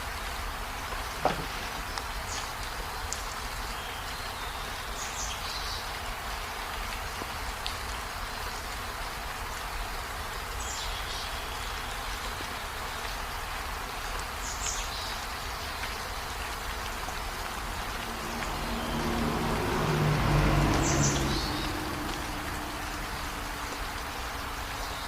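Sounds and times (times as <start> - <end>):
rushing water hiss: 0.0 - 25.0
low rumble: 17.5 - 24.4.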